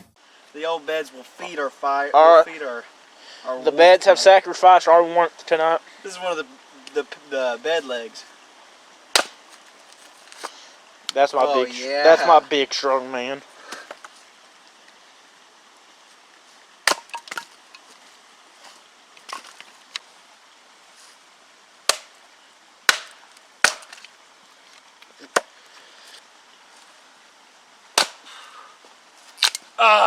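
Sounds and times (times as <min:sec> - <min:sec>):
dry wood cracking: 0:09.1 - 0:11.2, 0:16.8 - 0:20.1, 0:21.9 - 0:22.2, 0:22.9 - 0:27.0, 0:28.0 - 0:28.5, 0:29.2 - 0:29.8.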